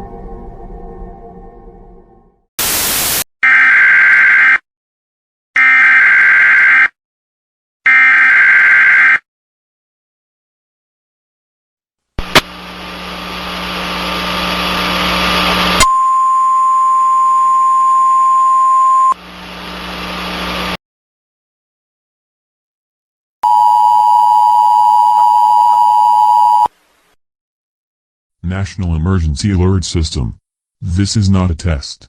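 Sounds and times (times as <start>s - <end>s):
hissing broadcast static: 2.6s - 3.2s, 12.2s - 15.8s.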